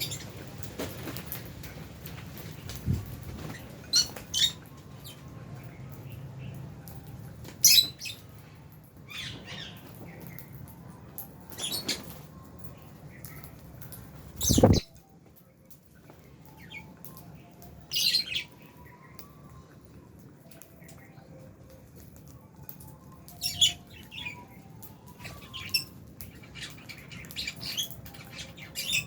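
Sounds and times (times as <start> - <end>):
birds chirping sharply: 2.4 - 8.4, 14.2 - 14.9.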